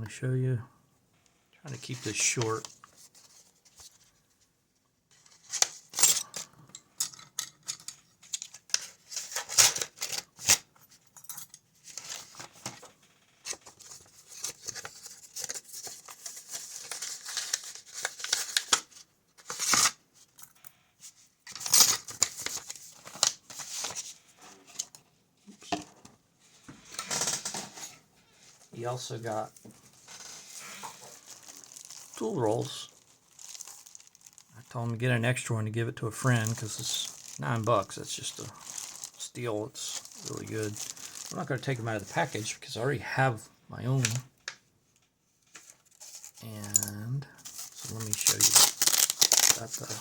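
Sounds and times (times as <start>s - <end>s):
packaging crinkling and rustling: 7.8s - 10.7s, 11.8s - 20.0s, 21.4s - 25.0s, 29.1s - 34.8s, 36.2s - 42.6s, 45.4s - 50.0s.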